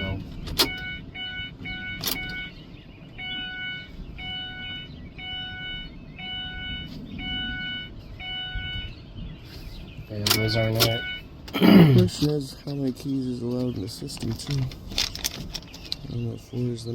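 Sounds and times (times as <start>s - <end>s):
car warning chime: 0.0s - 9.0s, 10.1s - 11.3s
sharp click: 10.2s - 11.0s.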